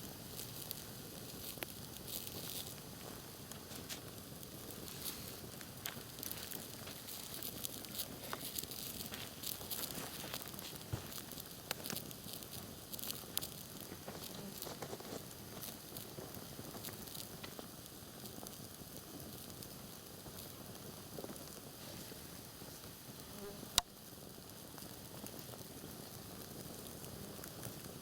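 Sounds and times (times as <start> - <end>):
insects buzzing: 0.0 - 17.7, 23.1 - 23.9
campfire crackling and popping: 0.0 - 28.0.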